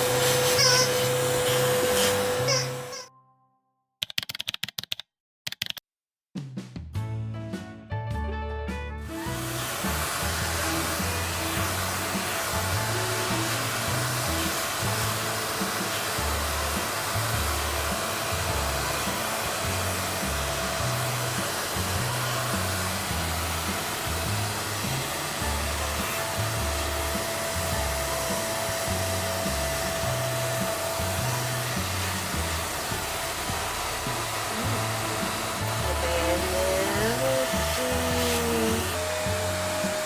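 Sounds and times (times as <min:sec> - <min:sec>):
vacuum motor running: 0:00.0 - 0:03.0, 0:09.1 - 0:40.0
background music with bass: 0:06.4 - 0:09.4.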